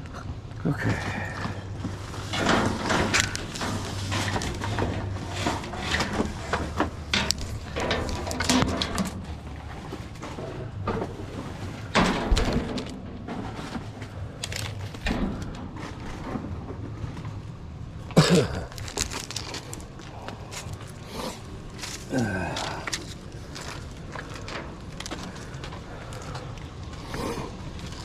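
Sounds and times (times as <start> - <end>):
objects knocking in a dumpster: 0.9 - 17.2.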